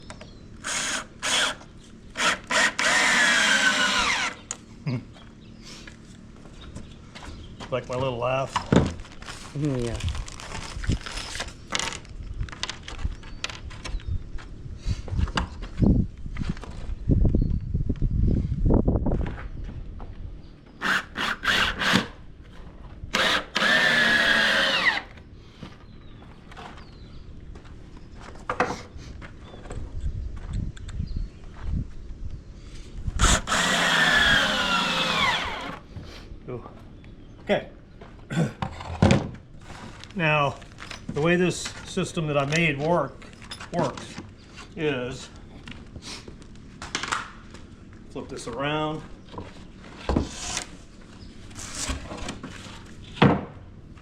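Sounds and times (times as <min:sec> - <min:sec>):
power drill whining: 0:00.6 - 0:04.6, 0:20.8 - 0:22.2, 0:23.1 - 0:25.2, 0:33.2 - 0:35.9.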